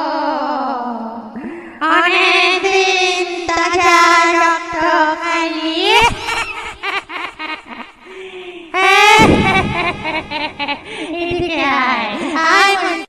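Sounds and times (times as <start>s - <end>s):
high-pitched voice singing: 0.0s - 6.6s, 11.2s - 13.0s.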